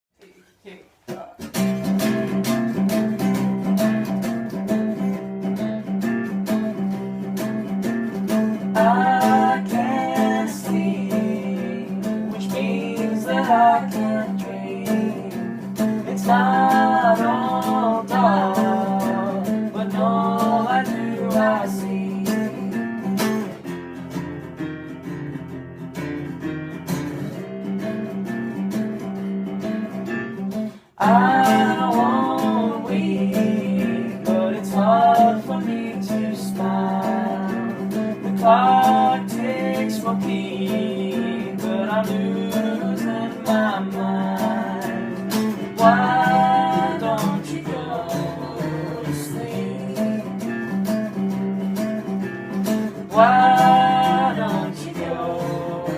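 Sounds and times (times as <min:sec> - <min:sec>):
acoustic guitar chords: 0:01.1 - 0:55.9
person singing slow song: 0:08.6 - 0:22.9, 0:30.8 - 0:50.7, 0:53.0 - 0:55.9.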